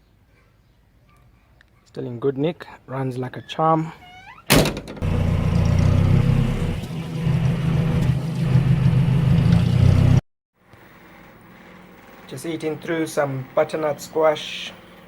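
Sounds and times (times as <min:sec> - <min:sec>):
pickup truck engine running: 0:05.0 - 0:10.2.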